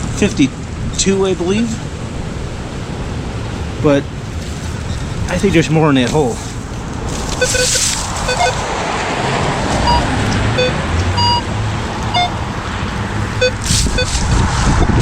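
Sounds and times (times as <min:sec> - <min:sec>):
wind rumble on microphone: 0:00.0 - 0:15.0
metal detector beeps: 0:07.4 - 0:08.6, 0:09.8 - 0:11.5, 0:12.1 - 0:12.4, 0:13.4 - 0:14.2.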